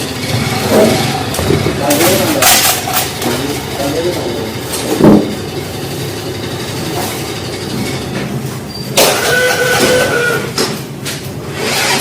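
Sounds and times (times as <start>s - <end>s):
motorcycle engine running: 0.0s - 8.6s.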